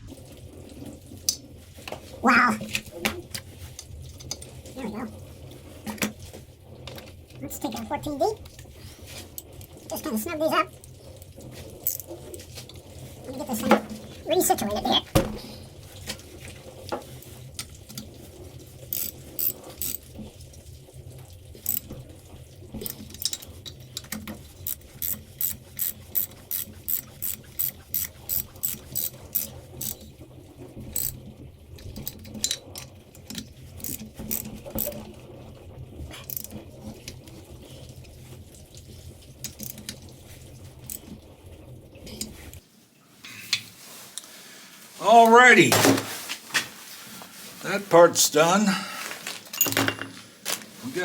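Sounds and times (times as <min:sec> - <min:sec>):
ratchet wrench clicking: 0:18.9 - 0:20.0, 0:24.6 - 0:30.0.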